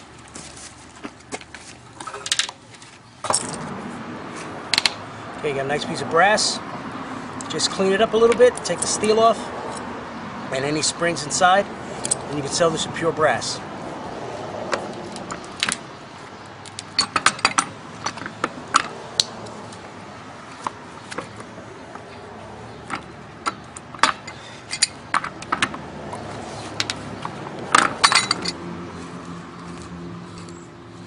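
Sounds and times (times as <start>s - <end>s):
metal parts clinking: 16.7s - 18.9s, 23.4s - 25.7s, 27.7s - 28.6s.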